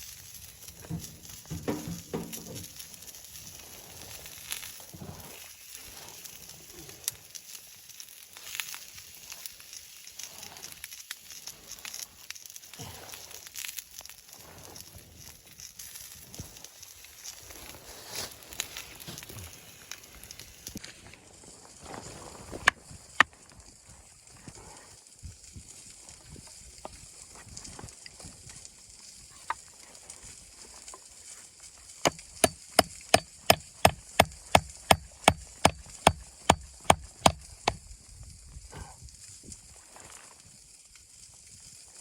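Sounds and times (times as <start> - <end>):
hatchet chopping wood: 1.5 - 2.5, 32.0 - 37.8.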